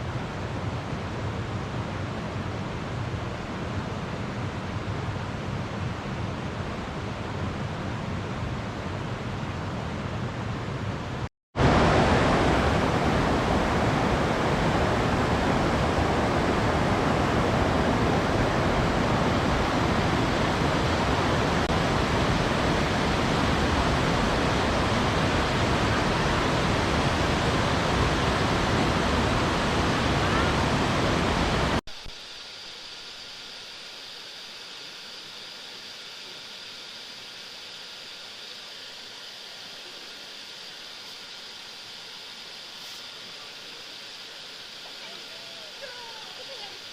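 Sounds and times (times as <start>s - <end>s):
waterfall and river rushing: 9.5s - 46.9s.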